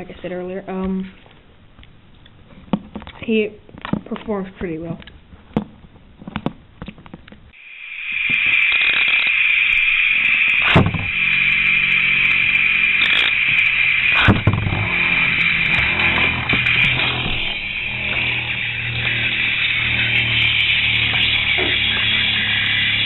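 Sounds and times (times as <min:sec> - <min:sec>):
spinning tops whirring and scraping: 0:07.6 - 0:23.0
scattered clicks: 0:08.2 - 0:23.0
spinning tops colliding knocks: 0:08.3 - 0:23.0.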